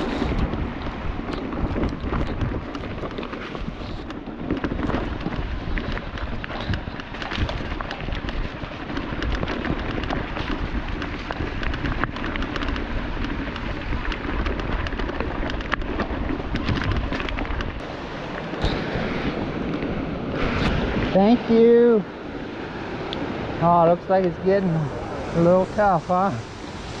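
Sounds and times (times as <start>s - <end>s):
bike rattling over rocks: 0.0s - 22.6s.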